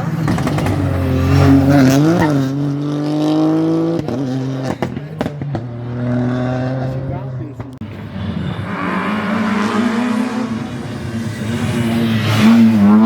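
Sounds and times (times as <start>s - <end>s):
rally car engine at full throttle: 0.0s - 13.0s
exhaust pops and bangs: 0.2s - 1.0s.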